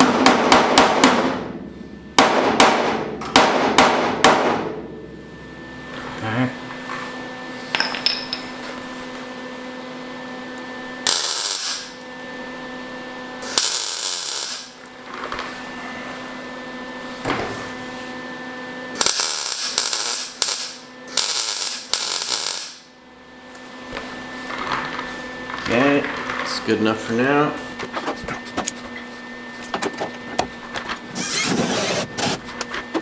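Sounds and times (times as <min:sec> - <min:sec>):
steady hum: 0:00.1 - 0:33.0
welding bursts: 0:11.0 - 0:12.0, 0:13.4 - 0:14.8, 0:19.0 - 0:22.9.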